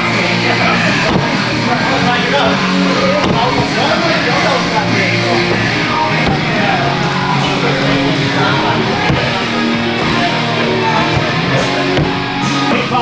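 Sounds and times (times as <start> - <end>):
loud rock music with guitar: 0.0 - 13.0.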